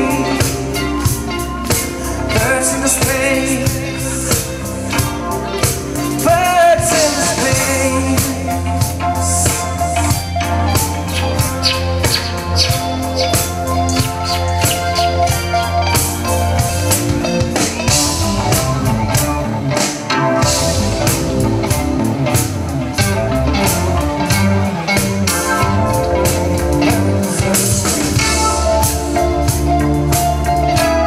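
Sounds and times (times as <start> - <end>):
electric guitar playing: 0.0 - 31.0
drum beat: 10.8 - 31.0.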